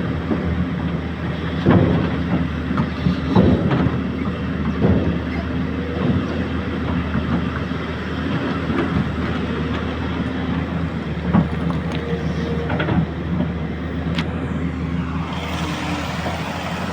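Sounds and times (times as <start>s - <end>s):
excavator diesel engine running: 0.0s - 16.9s.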